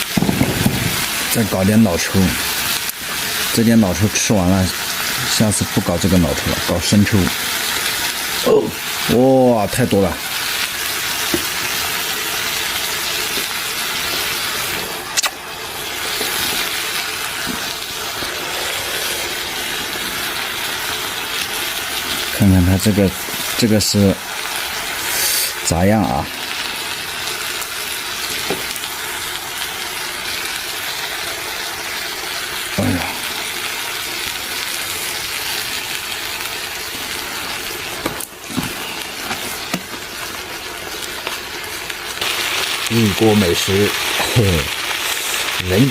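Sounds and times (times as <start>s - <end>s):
food sizzling in a pan: 0.0s - 45.9s
sharp click: 15.2s - 15.4s.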